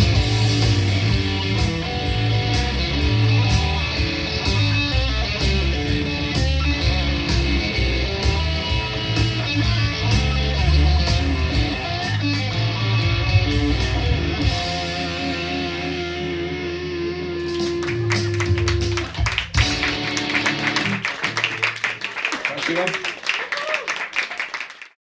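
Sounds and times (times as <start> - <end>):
electric guitar blues passage: 0.0 - 21.1
live rock band: 0.0 - 21.8
audience applause: 17.4 - 25.0.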